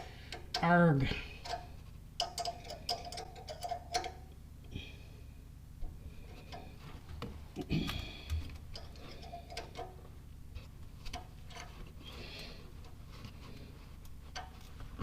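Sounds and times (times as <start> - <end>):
wrench turning thread tap: 2.2 - 4.2.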